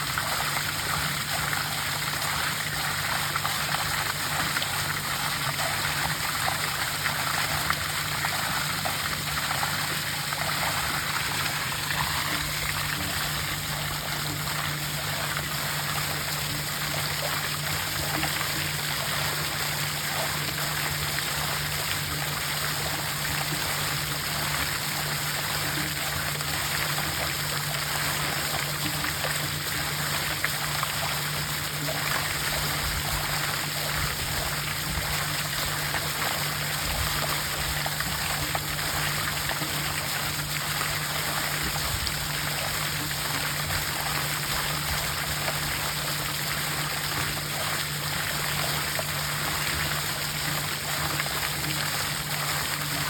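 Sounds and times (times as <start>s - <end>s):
steady low hum: 0.0s - 22.0s
water gushing and splashing: 0.0s - 53.0s.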